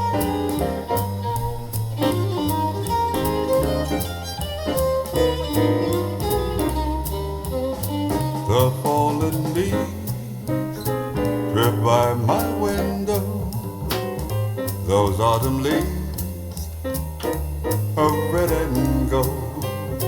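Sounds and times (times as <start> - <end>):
instrumental music through speaker: 0.0 - 20.0.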